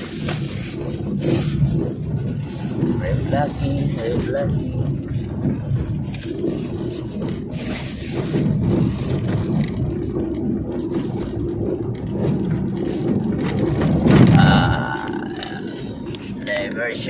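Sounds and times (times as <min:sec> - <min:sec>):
road noise: 0:00.0 - 0:17.0
vehicle engine: 0:00.0 - 0:17.0.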